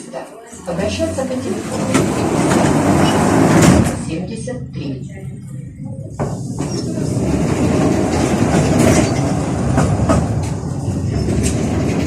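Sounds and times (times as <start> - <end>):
tram wheels rumbling on rails: 0.6 - 12.0.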